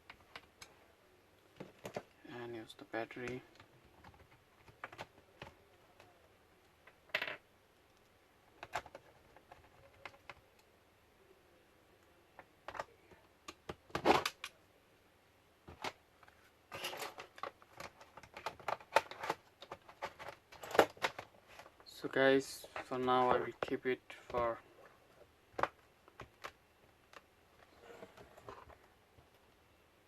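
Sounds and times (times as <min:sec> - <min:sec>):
plastic laptop parts clicking: 0:03.2 - 0:06.1, 0:07.9 - 0:10.7, 0:12.6 - 0:14.6, 0:16.7 - 0:21.7.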